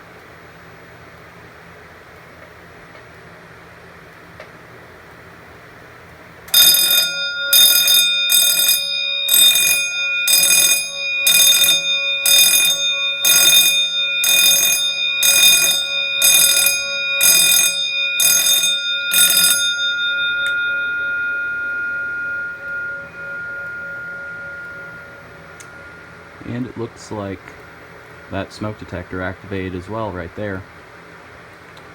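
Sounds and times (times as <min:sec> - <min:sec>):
fire alarm bell striking: 0:06.5 - 0:30.9.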